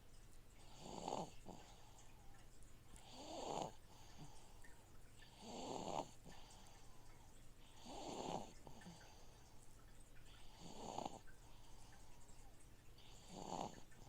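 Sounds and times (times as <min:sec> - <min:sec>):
aquarium filter humming: 0:00.0 - 0:14.0
baby snoring quietly: 0:00.6 - 0:02.1, 0:03.0 - 0:04.5, 0:05.2 - 0:06.8, 0:07.6 - 0:09.5, 0:10.3 - 0:11.8, 0:13.0 - 0:14.0.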